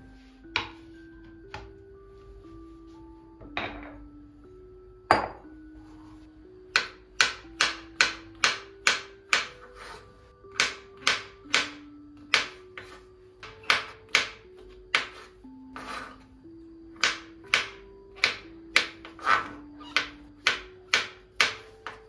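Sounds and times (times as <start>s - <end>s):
soft background music: 0.0s - 22.0s
knife chopping on cutting board: 6.7s - 16.0s.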